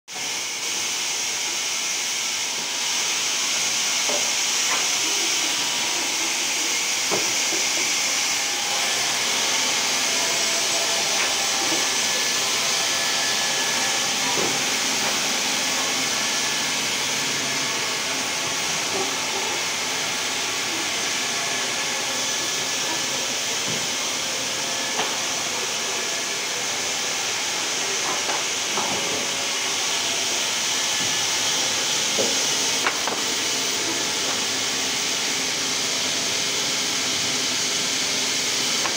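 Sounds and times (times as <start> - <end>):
band saw hissing: 0.8 - 38.9.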